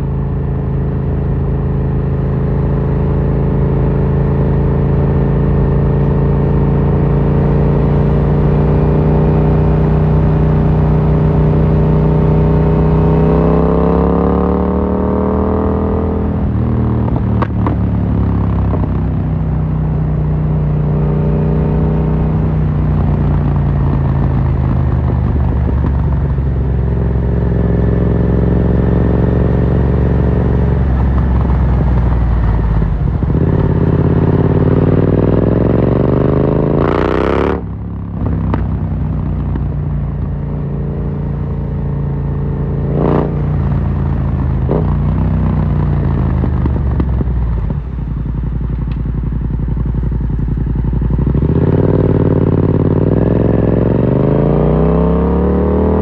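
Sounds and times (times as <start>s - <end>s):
motorcycle engine revving: 0.0s - 56.0s
exhaust crack: 37.6s - 38.8s.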